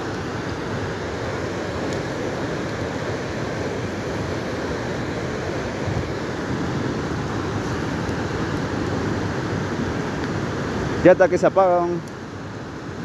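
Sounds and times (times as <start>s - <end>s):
bonfire roaring: 0.0s - 13.0s
fire crackles: 0.0s - 13.0s.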